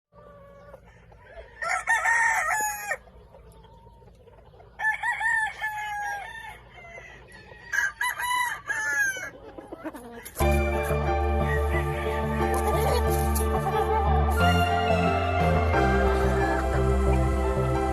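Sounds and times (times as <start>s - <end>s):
rooster crowing: 0.8s - 3.0s, 4.8s - 9.3s
music: 10.4s - 17.9s.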